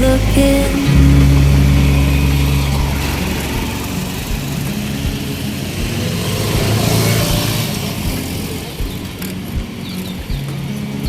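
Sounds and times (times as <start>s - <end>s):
vehicle engines passing: 0.0s - 10.3s.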